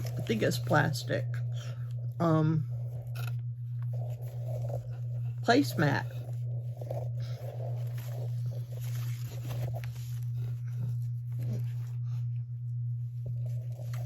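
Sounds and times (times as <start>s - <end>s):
plastic placemat rustling: 0.0s - 1.7s, 2.8s - 11.9s
steady low hum: 0.0s - 14.0s.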